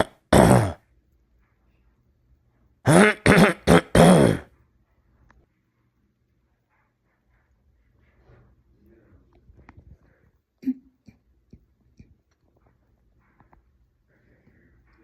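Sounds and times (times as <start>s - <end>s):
person clearing throat: 0.0s - 0.8s, 2.9s - 4.5s.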